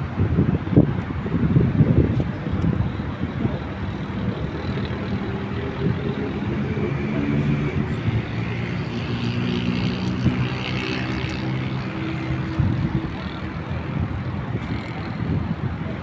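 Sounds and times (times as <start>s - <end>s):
city traffic engine drone: 0.0s - 16.0s.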